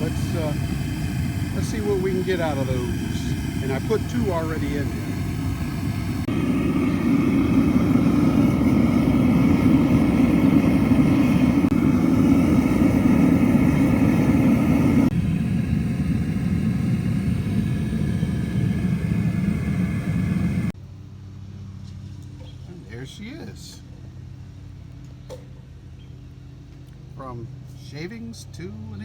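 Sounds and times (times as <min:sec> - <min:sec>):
melting furnace rumbling: 0:00.0 - 0:20.8.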